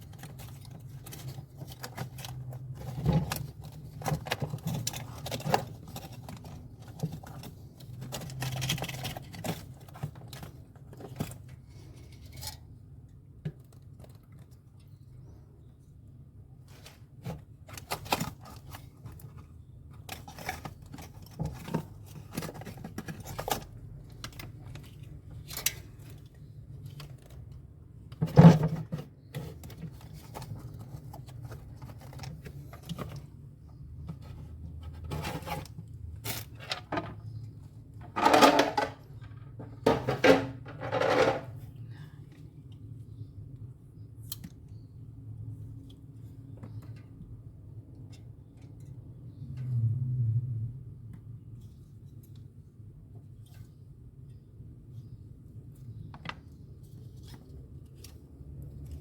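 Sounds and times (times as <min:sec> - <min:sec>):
clicks and scrapes of hand work: 0:00.0 - 0:15.4.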